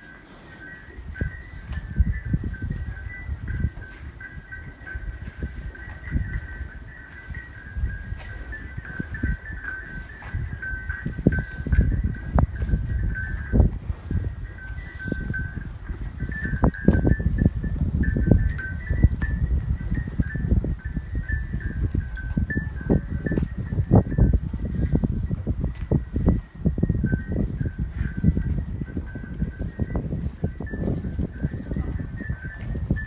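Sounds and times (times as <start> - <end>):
livestock shuffling: 0.0 - 24.4.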